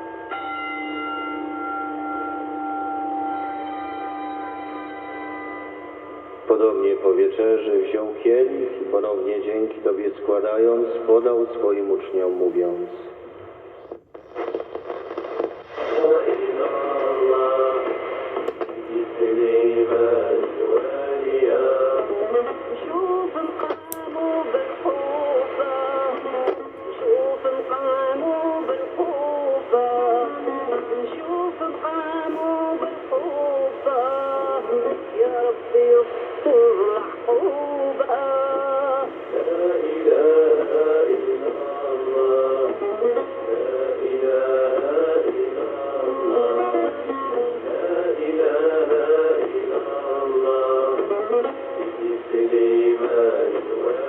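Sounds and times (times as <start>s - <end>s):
choir singing over am radio: 6.1s - 54.0s
radio static crackles: 11.2s - 20.6s, 23.4s - 37.6s, 38.6s - 43.4s.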